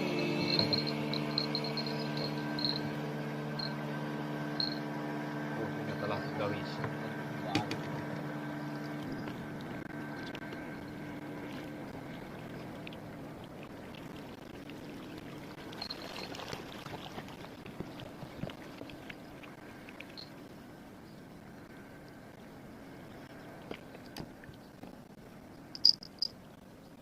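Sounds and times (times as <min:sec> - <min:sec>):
boat motor humming: 0:00.0 - 0:27.0
running river water: 0:00.0 - 0:27.0
small clicks and knocks on boat: 0:06.6 - 0:11.7, 0:15.8 - 0:20.3, 0:23.4 - 0:26.4.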